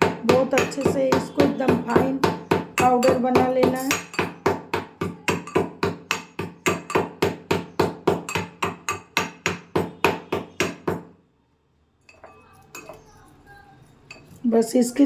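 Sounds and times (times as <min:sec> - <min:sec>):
pestle pounding in a mortar: 0:00.0 - 0:11.1.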